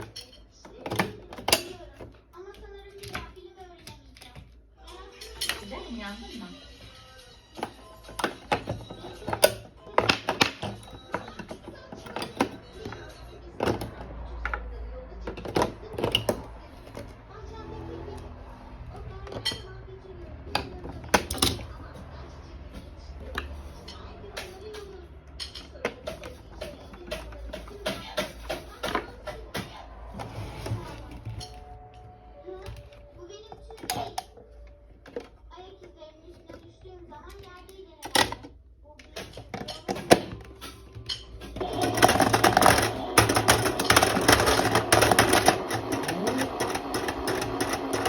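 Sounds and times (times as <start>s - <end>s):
toy washing machine motor rattling: 7.5s - 14.4s, 39.1s - 48.0s.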